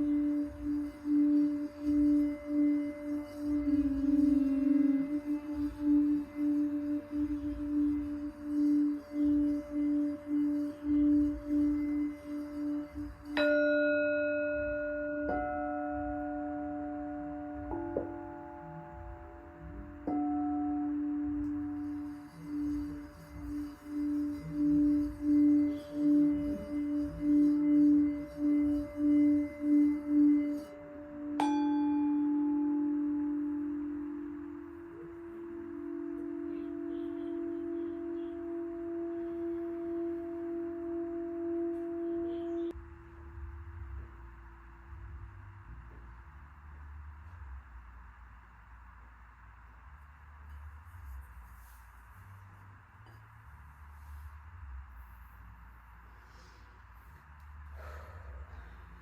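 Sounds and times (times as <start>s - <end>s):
higher-pitched bowl struck softly: 0.0s - 42.8s
singing bowl struck ringing: 0.0s - 42.8s
singing bowl wavering tone: 0.0s - 42.9s, 53.0s - 59.0s.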